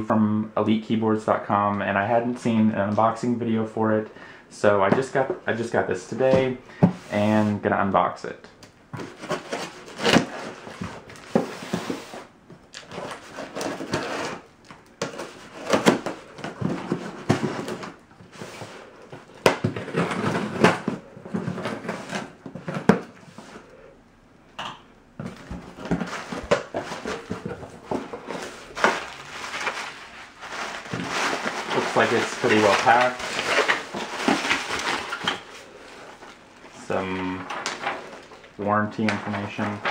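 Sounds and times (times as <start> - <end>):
cardboard rustling and scraping: 9.0 - 23.8, 25.2 - 39.9.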